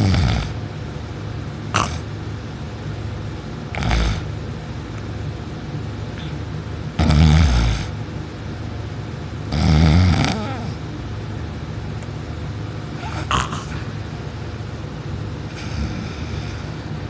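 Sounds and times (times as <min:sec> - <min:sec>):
person snoring loudly: 0:00.0 - 0:00.6, 0:01.8 - 0:02.0, 0:03.7 - 0:04.3, 0:07.0 - 0:08.0, 0:09.5 - 0:10.8, 0:13.0 - 0:13.8, 0:15.5 - 0:16.8
steady low hum: 0:00.0 - 0:17.0.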